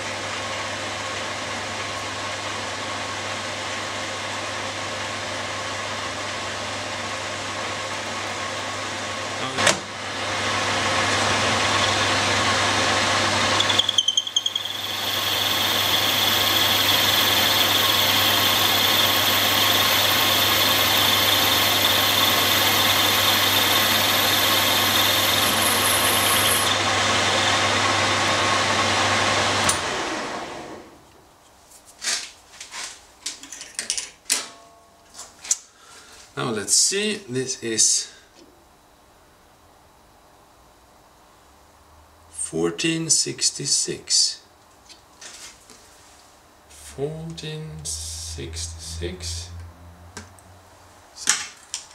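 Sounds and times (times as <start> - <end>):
metal lathe humming: 10.5 - 29.6
high whine: 11.5 - 26.9, 46.7 - 51.6.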